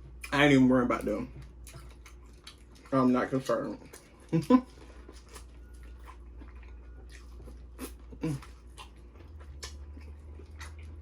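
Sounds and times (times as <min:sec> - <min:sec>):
chewing and wet lip smacks: 0:01.4 - 0:02.9, 0:03.8 - 0:11.0.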